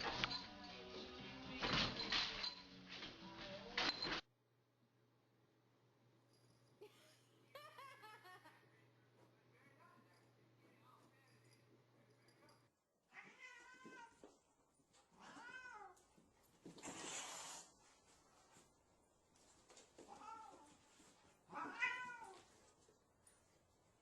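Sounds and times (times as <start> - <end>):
cat meowing: 13.1 - 14.2, 15.2 - 16.0, 20.1 - 20.7, 21.5 - 22.4.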